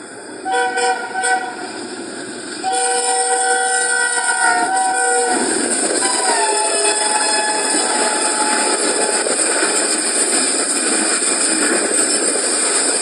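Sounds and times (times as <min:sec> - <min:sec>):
moving train rushing: 0:00.0 - 0:13.0
locomotive horn: 0:00.4 - 0:01.6, 0:02.6 - 0:05.4, 0:06.0 - 0:09.3.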